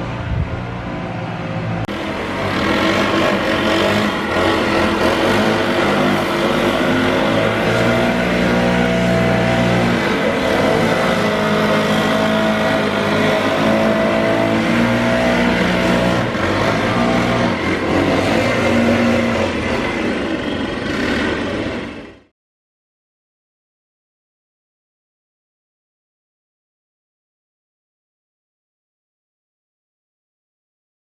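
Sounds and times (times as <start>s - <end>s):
engine running: 0.0s - 22.3s.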